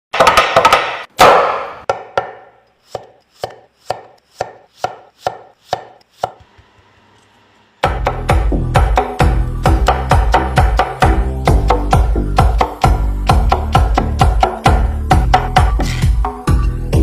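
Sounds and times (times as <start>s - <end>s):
knife chopping on cutting board: 0.2s - 6.8s.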